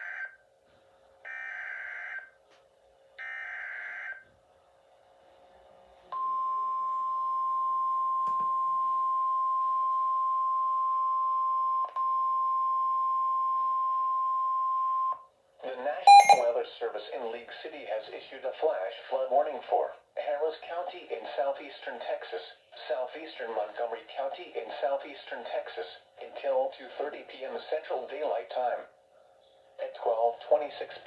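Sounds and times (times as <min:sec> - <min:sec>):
steady single-pitch warning tone: 0:16.1 - 0:16.5.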